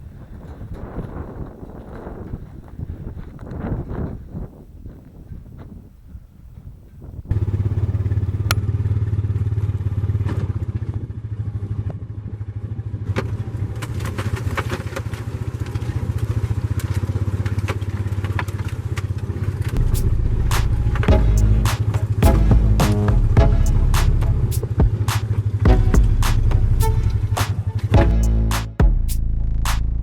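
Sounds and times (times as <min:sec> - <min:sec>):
utility vehicle engine throbbing: 0:07.3 - 0:13.2, 0:19.6 - 0:30.0.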